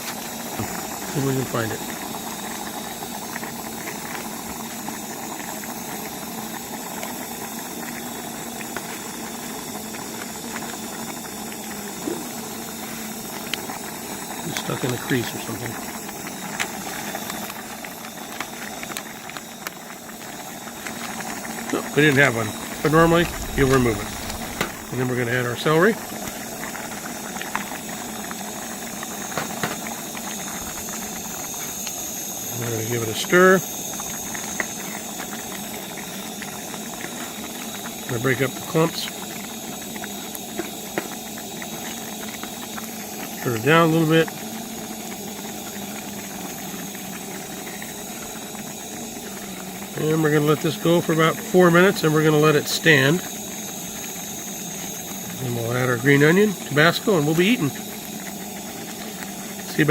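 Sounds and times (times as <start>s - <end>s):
pot of water boiling: 0.0s - 59.9s
stove burner hissing: 0.0s - 59.9s
foil packet crinkling: 20.8s - 26.4s.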